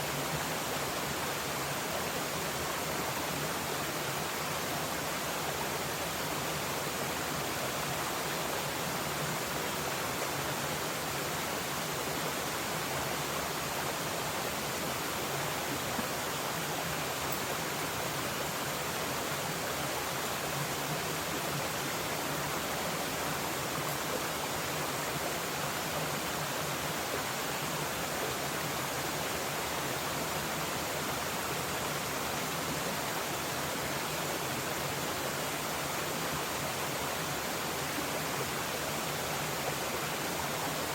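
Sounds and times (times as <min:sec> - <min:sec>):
stream flowing: 0:00.0 - 0:40.9.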